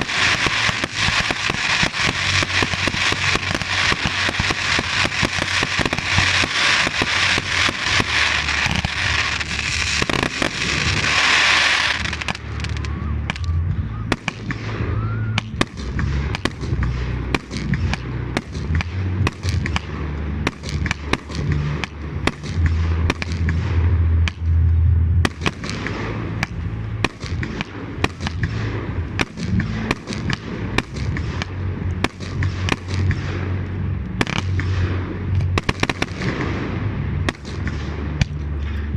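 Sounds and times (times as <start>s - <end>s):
fireworks bangs: 0.0s - 38.9s
fireworks crackling: 0.0s - 38.9s
low rumble: 0.0s - 38.9s.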